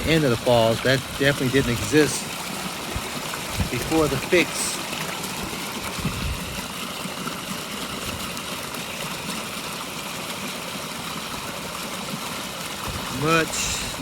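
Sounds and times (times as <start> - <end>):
waterfall pouring over rocks: 0.0 - 14.0.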